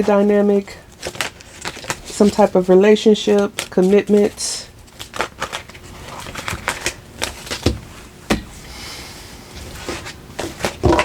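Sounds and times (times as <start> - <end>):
cards tapping and slapping: 5.0 - 8.6.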